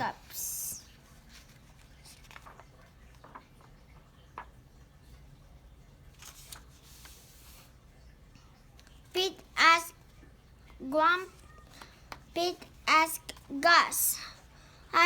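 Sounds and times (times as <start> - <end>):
paper page rustling: 0.2 - 4.6, 6.1 - 7.8.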